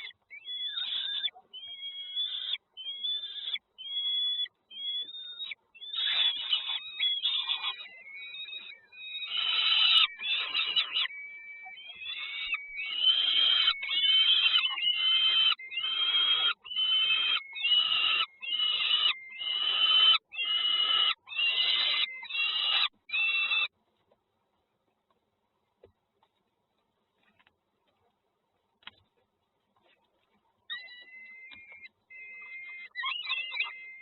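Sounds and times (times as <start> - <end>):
harsh raspy bird calls: 0.0 - 23.7, 30.7 - 34.0.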